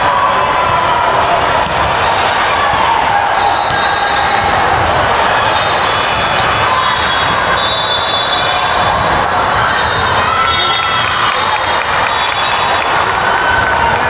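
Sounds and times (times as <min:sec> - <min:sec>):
crowd chatter echoing: 0:00.0 - 0:14.0
balls bouncing and being struck: 0:01.1 - 0:07.6, 0:08.4 - 0:10.2.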